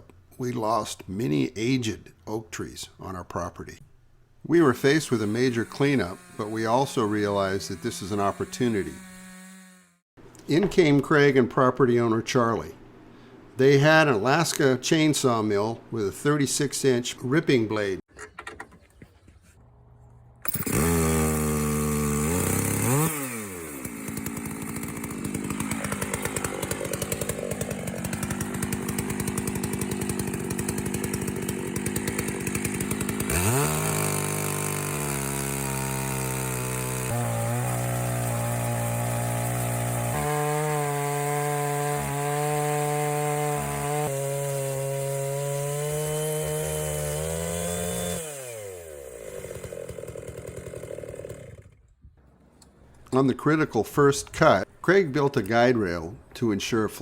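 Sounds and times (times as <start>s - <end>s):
chainsaw ripping wood: 4.8s - 10.0s, 20.4s - 51.9s.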